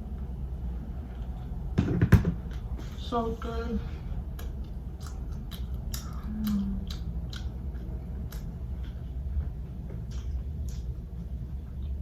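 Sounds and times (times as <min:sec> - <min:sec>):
steady low hum: 0:00.0 - 0:12.0
crunchy chewing: 0:04.3 - 0:12.0.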